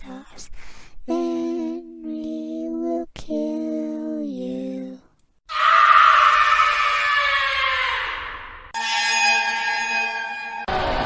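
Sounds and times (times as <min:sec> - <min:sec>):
harsh scream falling in pitch: 0:05.5 - 0:11.0.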